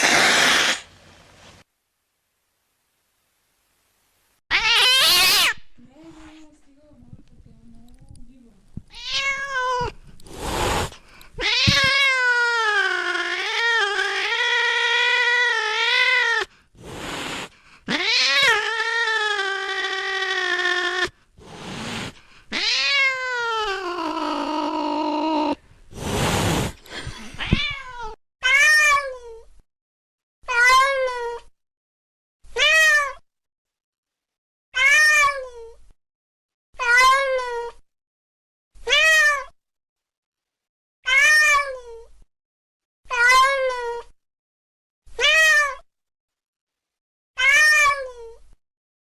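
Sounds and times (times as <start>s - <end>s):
cat meowing: 4.5s - 5.7s, 8.9s - 10.0s, 11.4s - 16.5s, 17.9s - 21.1s, 22.5s - 25.6s, 27.4s - 29.3s, 30.5s - 31.5s, 32.6s - 33.2s, 34.8s - 35.7s, 36.8s - 37.8s, 38.8s - 39.5s, 41.1s - 42.0s, 43.1s - 44.1s, 45.2s - 45.8s, 47.4s - 48.4s.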